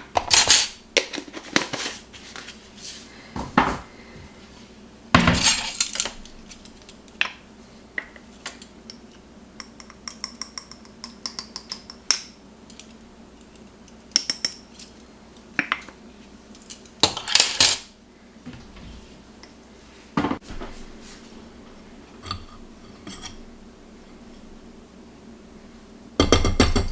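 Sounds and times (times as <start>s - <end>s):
utensils and dishes clinking: 0.0s - 1.6s, 5.2s - 7.0s, 16.7s - 17.9s.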